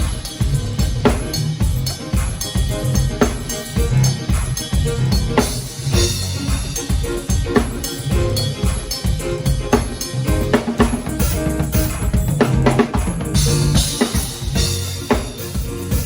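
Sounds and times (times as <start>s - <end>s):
held instrument notes: 0.0s - 16.0s
bass drum and snare hits: 9.8s - 16.0s.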